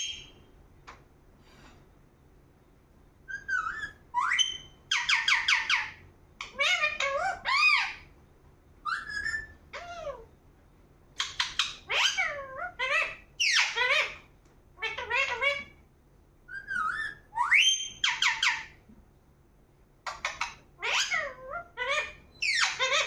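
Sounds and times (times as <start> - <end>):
parakeet whistling and squawking: 0.0 - 0.4, 3.3 - 8.1, 8.8 - 10.3, 11.2 - 15.8, 16.4 - 18.8, 20.0 - 23.0.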